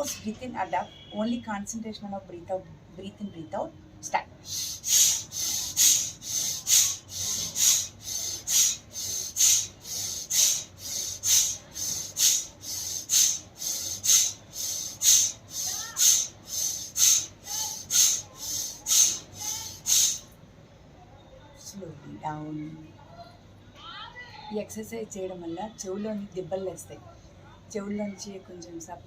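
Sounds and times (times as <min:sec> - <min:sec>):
woman breathing forcefully: 0:04.4 - 0:20.3.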